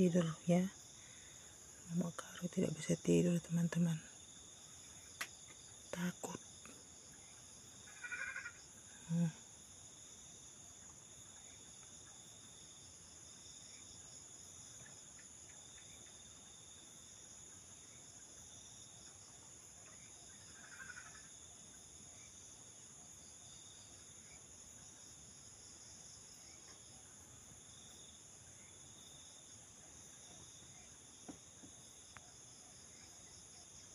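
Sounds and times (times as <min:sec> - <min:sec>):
crickets and night insects chirping: 0:00.0 - 0:33.9
faint animal call: 0:07.8 - 0:09.5, 0:19.8 - 0:21.4.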